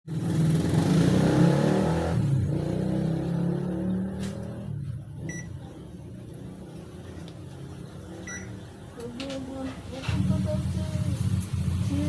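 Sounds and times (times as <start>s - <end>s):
short electronic beep: 5.3s - 5.5s, 8.3s - 8.6s.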